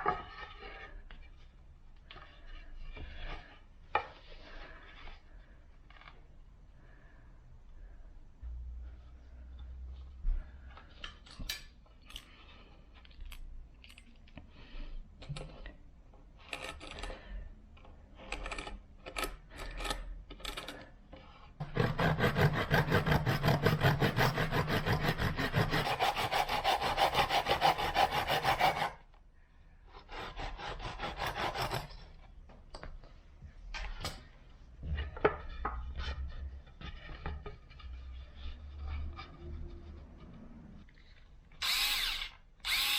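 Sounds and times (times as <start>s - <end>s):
hand tool rasping on wood: 21.6s - 29.0s, 30.1s - 31.9s.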